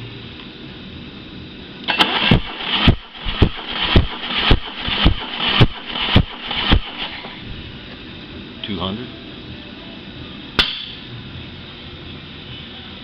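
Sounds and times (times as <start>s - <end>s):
starter cranking engine: 1.9s - 7.5s.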